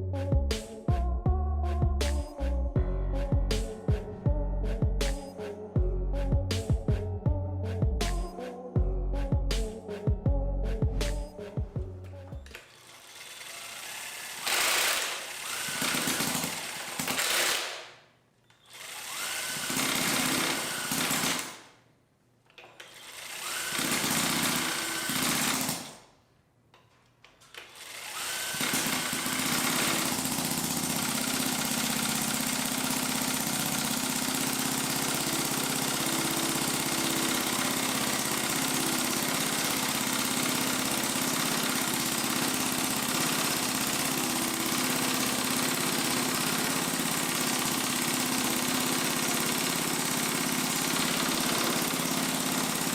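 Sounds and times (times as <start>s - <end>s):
noisy machine running: 28.0s - 52.9s.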